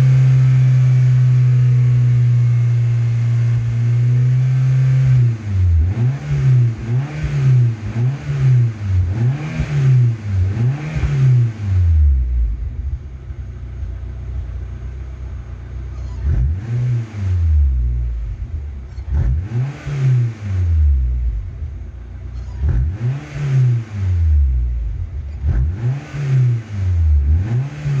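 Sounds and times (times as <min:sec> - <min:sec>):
engine revving in quick blips: 0:00.0 - 0:12.7, 0:15.9 - 0:21.7, 0:22.3 - 0:28.0.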